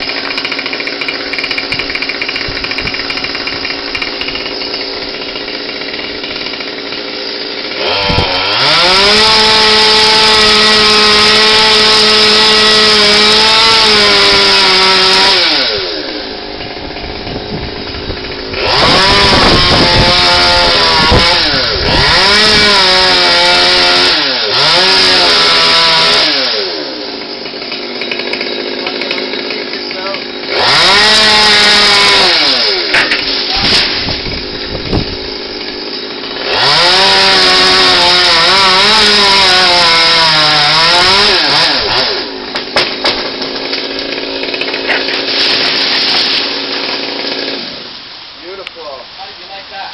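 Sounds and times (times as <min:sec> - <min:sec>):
chainsaw at full throttle: 0:00.0 - 0:49.9
chainsaw idling: 0:00.0 - 0:49.9.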